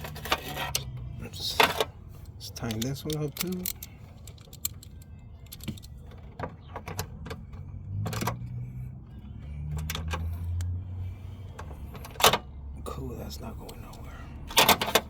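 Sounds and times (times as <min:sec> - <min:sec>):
hand tool metal clicks: 0:02.6 - 0:05.9.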